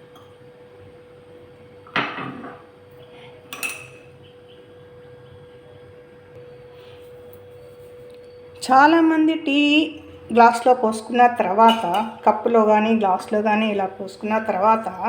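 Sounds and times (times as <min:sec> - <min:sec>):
faint hum: 0:00.0 - 0:15.0
kitchen vessels clattering: 0:02.0 - 0:02.6, 0:11.6 - 0:12.2
ringing clink of cups: 0:03.5 - 0:04.1.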